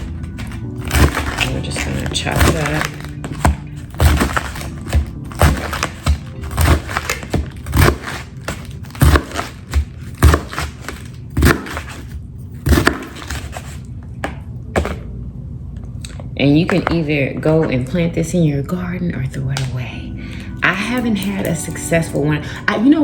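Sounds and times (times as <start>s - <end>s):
knife chopping lettuce: 0.0s - 15.0s.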